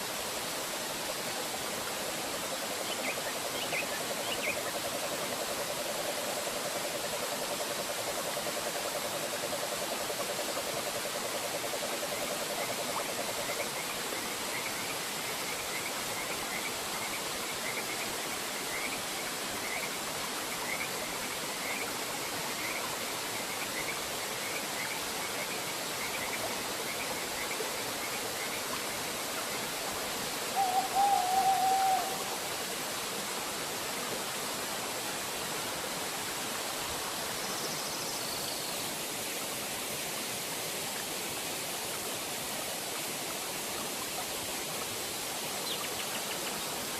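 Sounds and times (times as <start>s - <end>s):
bird warbling call: 30.5s - 32.3s.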